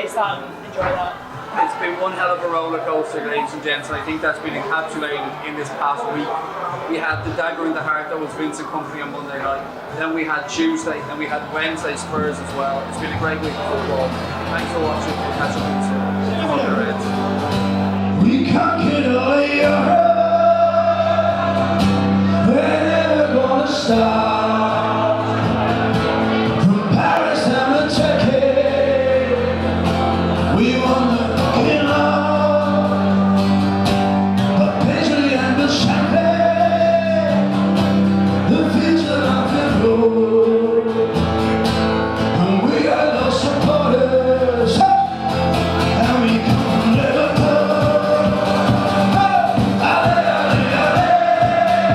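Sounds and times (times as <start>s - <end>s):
person singing over music: 45.9s - 51.9s.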